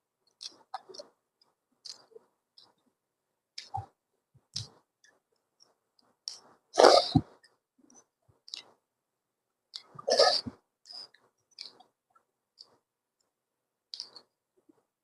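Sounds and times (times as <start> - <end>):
chewing: 0.3 - 1.2
mouth clicks and smacks: 0.3 - 2.9, 3.5 - 8.9, 9.7 - 12.9, 13.9 - 14.4.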